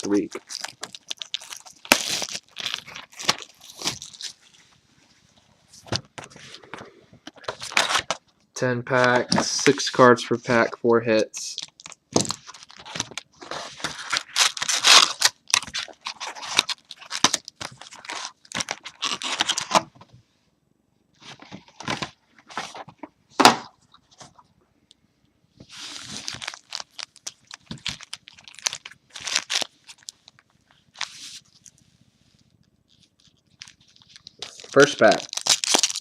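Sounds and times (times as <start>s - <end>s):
plastic shrink-wrap tearing and crinkling: 0.0s - 4.5s, 11.5s - 19.9s, 25.7s - 31.8s, 32.9s - 36.0s.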